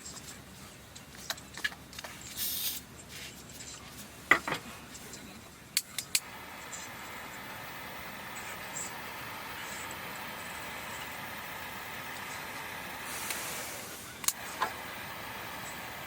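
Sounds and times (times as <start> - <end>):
short hiss: 2.4 - 2.8, 13.0 - 14.1.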